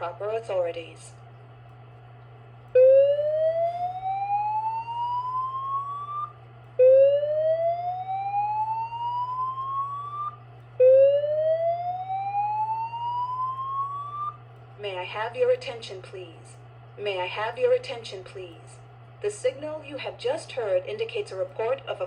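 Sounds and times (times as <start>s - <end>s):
fire alarm whoop tone: 2.8s - 14.4s.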